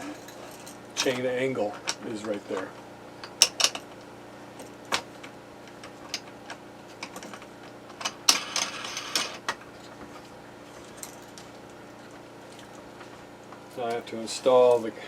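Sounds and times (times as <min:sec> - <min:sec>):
metal parts clicking and rattling: 0:00.0 - 0:01.2, 0:03.2 - 0:03.9, 0:05.9 - 0:09.9.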